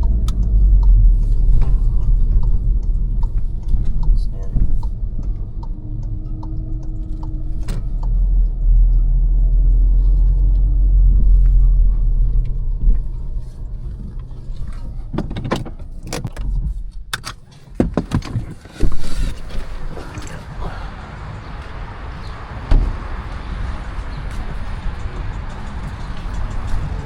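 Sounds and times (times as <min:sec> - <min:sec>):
sharp clicks and knocks: 0:00.0 - 0:19.6
car engine rumbling: 0:00.0 - 0:27.0.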